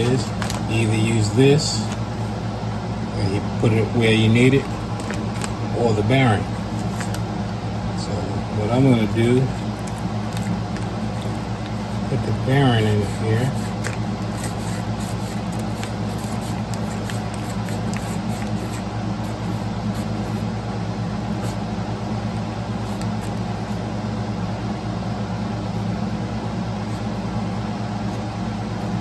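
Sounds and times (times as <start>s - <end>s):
low mechanical hum: 0.0s - 29.0s.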